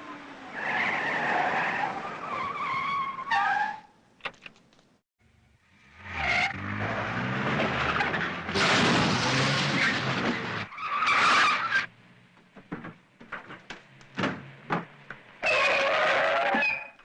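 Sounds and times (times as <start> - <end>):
tyre screech: 7.8 - 11.9, 15.4 - 17.0.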